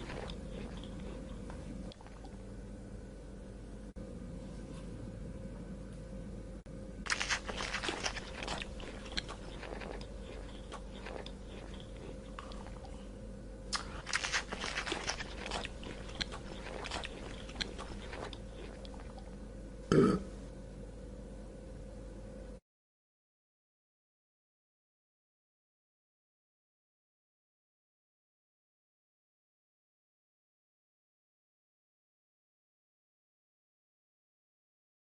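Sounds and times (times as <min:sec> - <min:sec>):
animal crunching and chewing food: 0:00.0 - 0:02.4, 0:07.1 - 0:13.0, 0:13.7 - 0:19.4.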